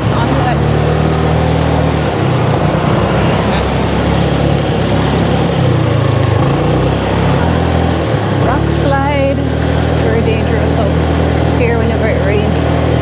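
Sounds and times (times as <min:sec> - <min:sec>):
motor scooter engine running: 0:00.0 - 0:13.0.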